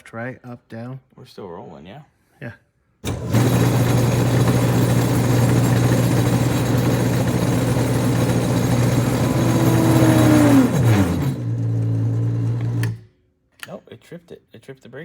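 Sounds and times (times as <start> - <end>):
loud steady machine hum: 3.1 - 13.0.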